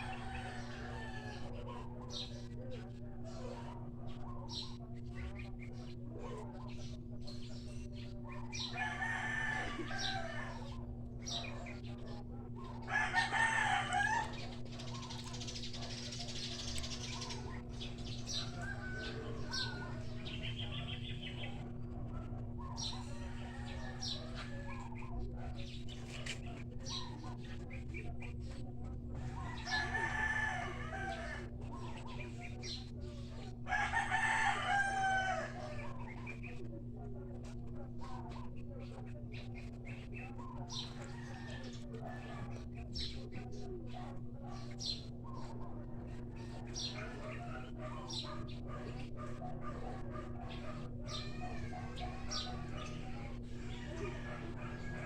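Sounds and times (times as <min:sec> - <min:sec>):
rooster crowing: 0:00.0 - 0:02.1, 0:08.6 - 0:10.8, 0:12.8 - 0:14.6, 0:17.1 - 0:20.4, 0:22.8 - 0:25.2, 0:29.2 - 0:31.7, 0:33.6 - 0:35.9, 0:41.0 - 0:42.6, 0:49.6 - 0:55.0
steady low hum: 0:00.0 - 0:55.0.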